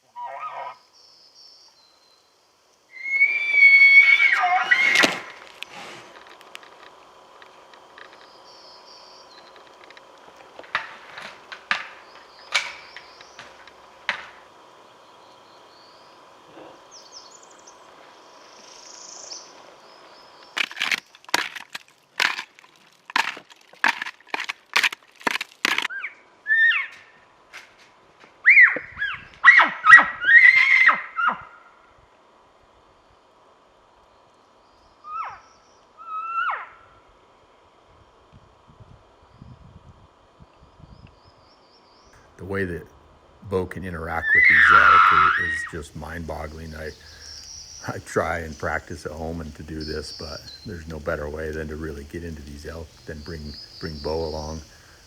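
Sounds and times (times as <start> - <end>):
elk mews and chirps: 0.1 - 0.8, 2.9 - 5.3, 25.9 - 27.0, 28.5 - 31.5, 35.1 - 35.4, 36.0 - 36.8, 44.2 - 45.8
sticks snapping: 20.5 - 25.9.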